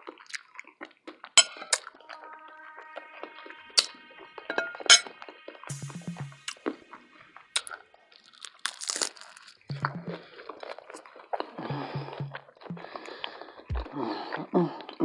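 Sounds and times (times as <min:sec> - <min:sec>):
close-miked biting and chewing: 0:00.0 - 0:02.0, 0:07.6 - 0:15.0.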